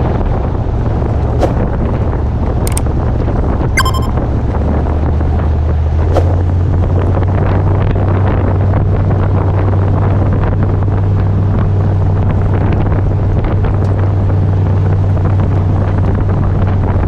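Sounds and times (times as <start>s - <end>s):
loud rumble with low hum: 4.9s - 17.0s.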